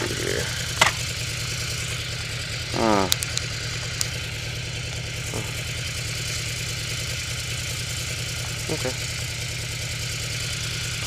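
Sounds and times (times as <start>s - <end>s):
motorcycle engine idling: 0.0s - 11.0s
sharp clicks: 3.1s - 4.2s.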